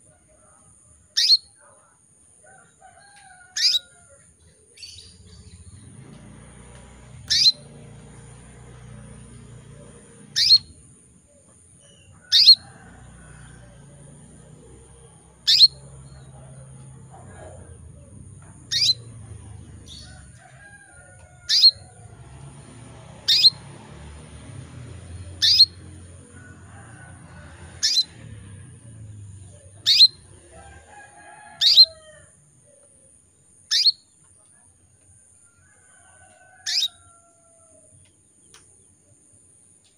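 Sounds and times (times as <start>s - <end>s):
canary chirps: 1.1s - 1.7s, 3.4s - 20.5s, 21.2s - 26.0s, 27.2s - 28.2s, 29.4s - 30.9s, 31.6s - 32.0s, 33.6s - 34.2s, 36.6s - 37.1s
faint low rumble: 4.8s - 31.2s.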